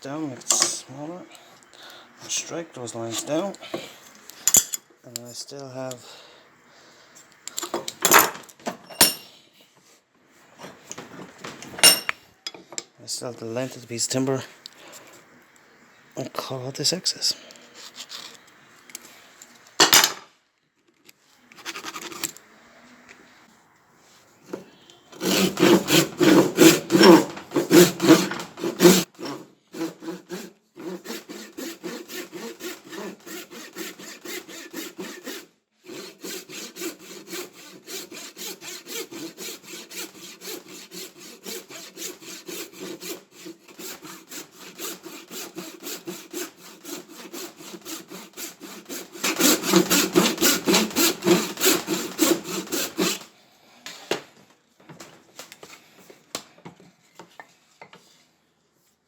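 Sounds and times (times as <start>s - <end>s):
hand saw cutting wood: 0.2s - 1.2s, 24.5s - 53.3s.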